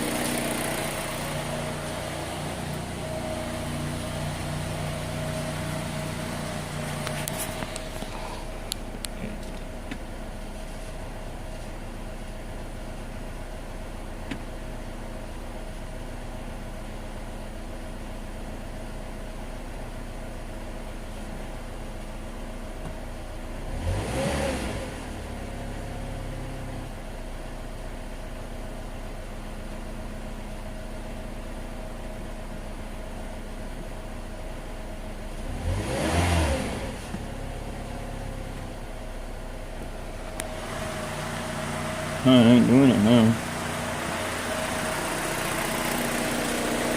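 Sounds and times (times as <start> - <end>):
car engine idling and revving: 0.0 - 46.9.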